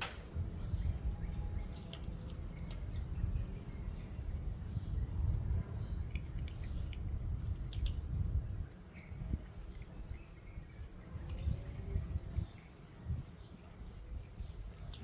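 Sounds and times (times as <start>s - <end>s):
light clicks: 6.1s - 8.0s, 14.7s - 15.0s.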